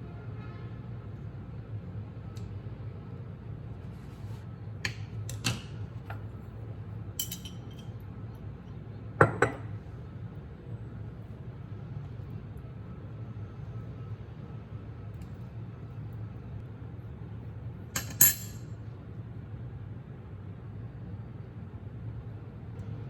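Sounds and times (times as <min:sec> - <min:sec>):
dishes and utensils clinking: 0:07.2 - 0:07.9, 0:18.0 - 0:18.7.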